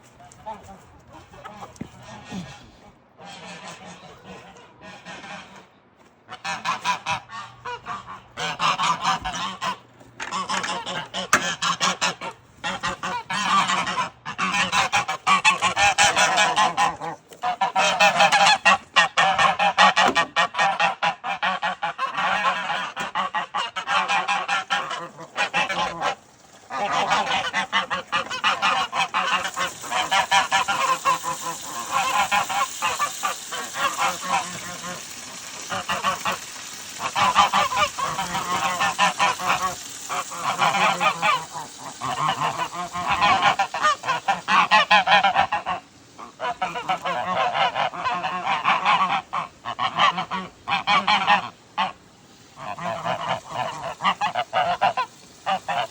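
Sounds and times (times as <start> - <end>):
geese honking: 0.1 - 5.7, 6.3 - 55.9.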